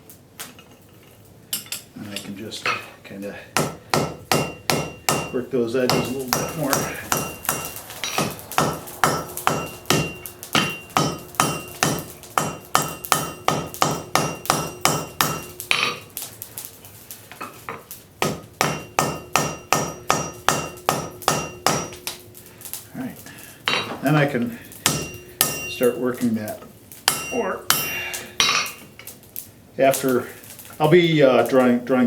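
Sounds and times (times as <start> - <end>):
hammer striking metal on anvil: 3.6 - 16.0, 18.2 - 22.3, 23.7 - 24.0, 24.8 - 26.1, 27.0 - 28.9.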